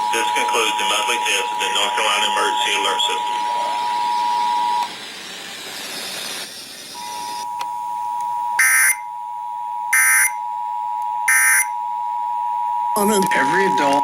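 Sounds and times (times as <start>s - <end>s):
radio hiss: 0.0s - 4.9s
buzzy data bursts: 9.9s - 10.4s, 11.3s - 11.7s
two-pitch attention tone: 9.9s - 10.4s, 11.2s - 11.8s.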